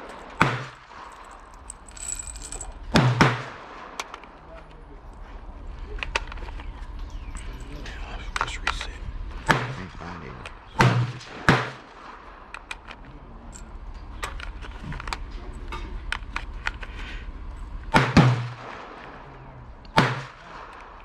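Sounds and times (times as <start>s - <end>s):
gunshots with echo: 9.5s - 12.5s, 17.9s - 21.0s.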